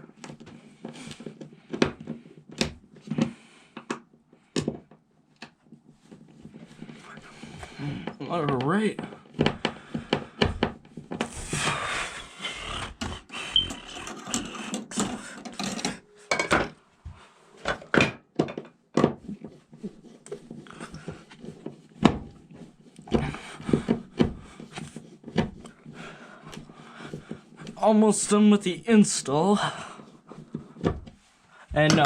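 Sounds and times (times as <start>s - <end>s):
handling knocks and clicks: 0.1s - 11.4s, 13.6s - 16.8s, 31.8s - 32.0s
scraping and grinding: 12.9s - 16.1s.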